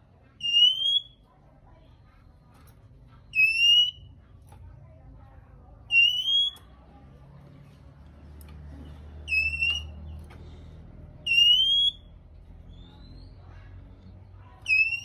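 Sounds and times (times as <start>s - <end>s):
bird shrill whistled calls: 14.7s - 15.0s.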